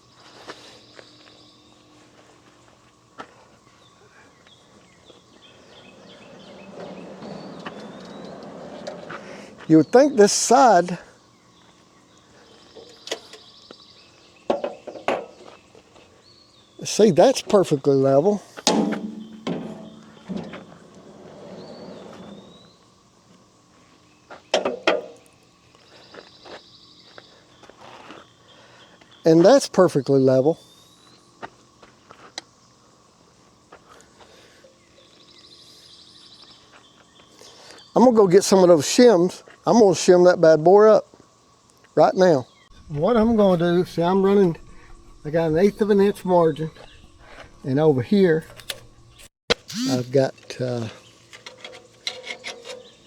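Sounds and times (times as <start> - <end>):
faint outdoor background noise: 0.0 - 53.0
bird chirping: 3.8 - 10.7, 18.6 - 22.9
tool knocking on metal: 18.7 - 20.6
sharp click: 49.5 - 50.2.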